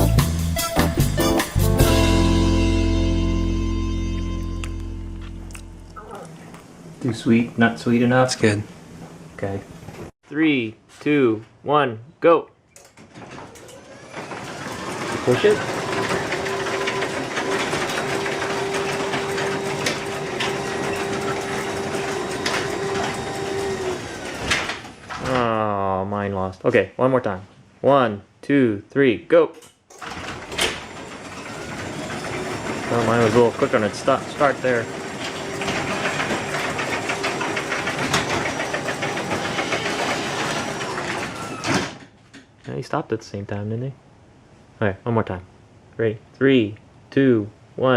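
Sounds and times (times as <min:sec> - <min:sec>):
garage door openers running: 0:12.8 - 0:25.6, 0:29.6 - 0:42.2.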